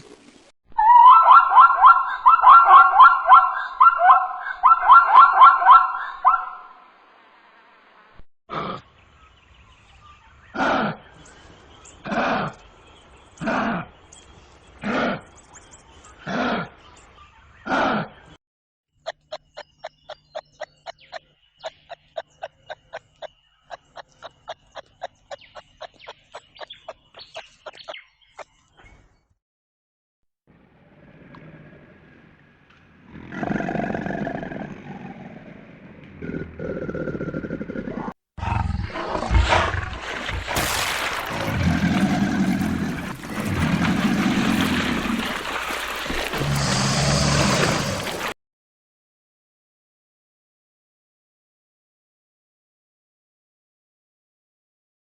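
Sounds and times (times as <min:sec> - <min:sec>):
animal short high calls: 0:00.8 - 0:06.8.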